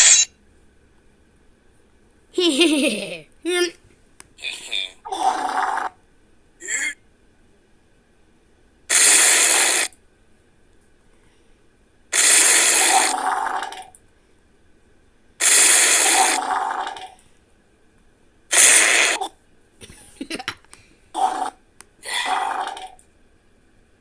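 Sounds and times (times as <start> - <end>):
wet fart sounds: 8.9 - 9.9, 12.1 - 14.0, 15.4 - 17.2, 18.5 - 19.3.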